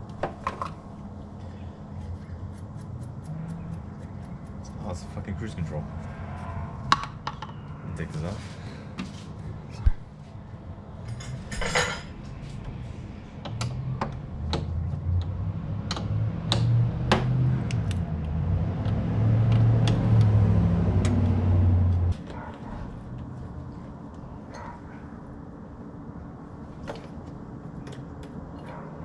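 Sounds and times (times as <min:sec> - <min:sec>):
low motor hum: 0:00.0 - 0:08.0, 0:12.1 - 0:28.9
metal tools clinking: 0:11.1 - 0:12.1.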